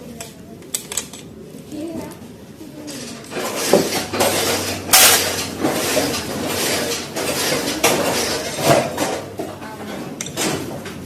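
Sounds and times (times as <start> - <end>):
metal tools clanking: 2.8 - 11.0.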